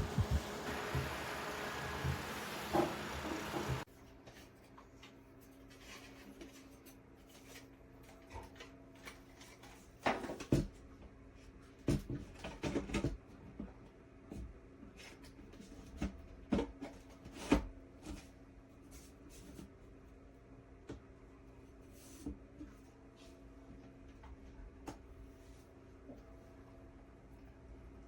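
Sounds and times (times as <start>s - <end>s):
electric fan motor humming: 0.0s - 3.9s.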